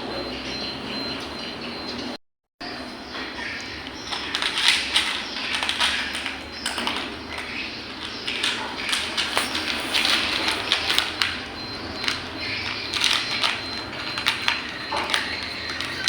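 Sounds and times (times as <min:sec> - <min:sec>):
cat chewing and crunching: 0:03.8 - 0:16.0.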